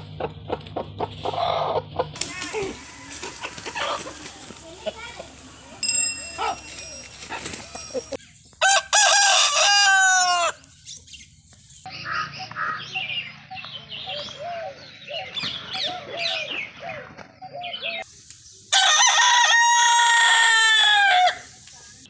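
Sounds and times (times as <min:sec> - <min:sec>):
chickens clucking: 0:00.0 - 0:08.6, 0:11.8 - 0:18.5
rooster crowing: 0:02.5 - 0:04.2, 0:08.6 - 0:10.6, 0:18.7 - 0:21.5.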